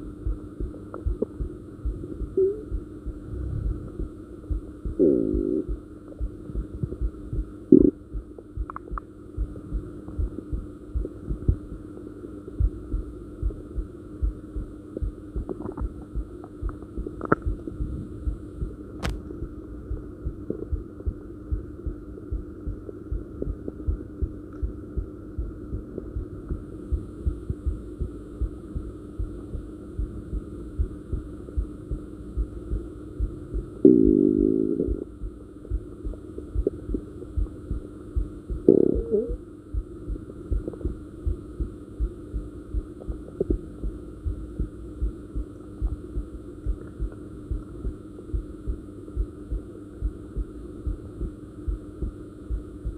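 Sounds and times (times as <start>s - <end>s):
heartbeat thumps: 0.0s - 52.9s
steady hum: 0.0s - 52.9s
stomach gurgling: 5.0s - 7.1s, 7.7s - 9.1s, 15.0s - 18.4s, 33.8s - 35.2s, 38.5s - 39.4s, 40.1s - 41.0s, 42.9s - 44.0s.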